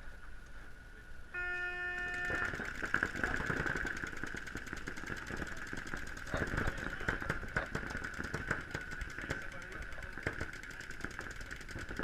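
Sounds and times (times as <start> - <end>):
start horn: 1.3 - 2.7
paintball markers firing rapidly: 2.1 - 12.0.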